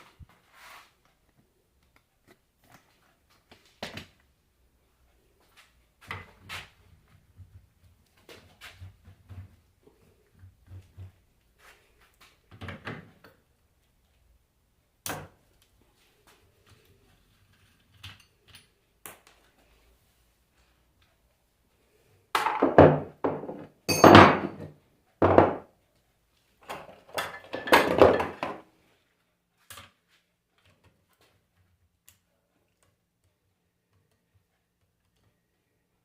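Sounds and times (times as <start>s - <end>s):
clatter of hand tools and parts: 16.6s - 18.8s, 26.6s - 28.6s.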